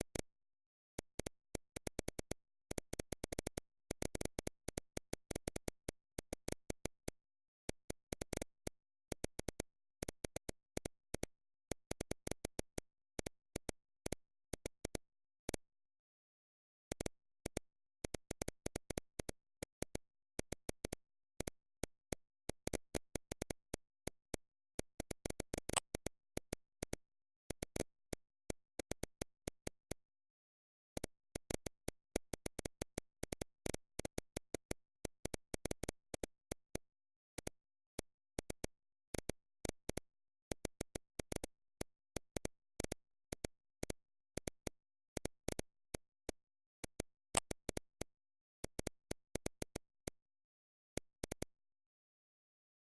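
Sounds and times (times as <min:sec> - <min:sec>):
sharp clicks: 0:16.9 - 0:29.7, 0:37.4 - 0:50.2.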